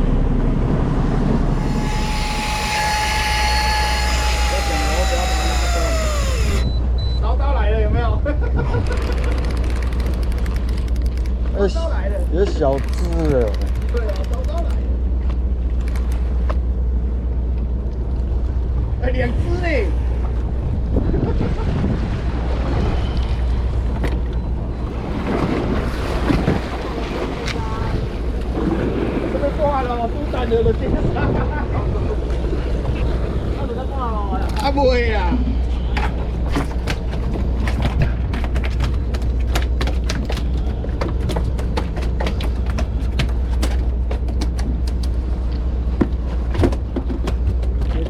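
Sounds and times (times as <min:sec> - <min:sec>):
boat engine droning: 0:00.0 - 0:07.0, 0:22.2 - 0:37.6
water noise: 0:00.0 - 0:07.0, 0:21.5 - 0:38.0
boat engine rumble: 0:00.0 - 0:48.0
wind buffeting microphone: 0:20.3 - 0:24.0, 0:24.9 - 0:39.3.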